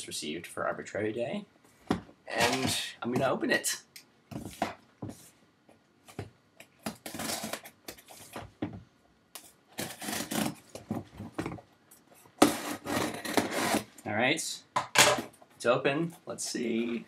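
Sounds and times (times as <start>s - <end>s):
packaging rustling and scraping: 6.8s - 8.5s, 9.4s - 11.4s.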